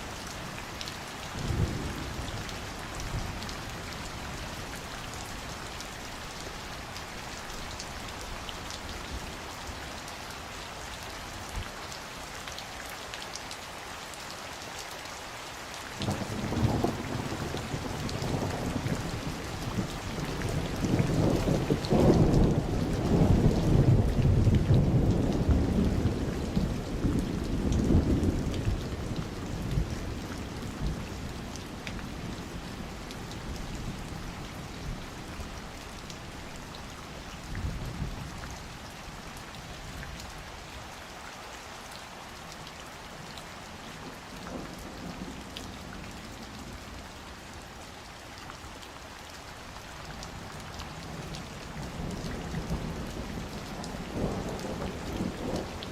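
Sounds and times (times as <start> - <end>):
steady rain falling: 0.0 - 55.9
low roll of thunder: 16.0 - 31.4, 51.0 - 55.9.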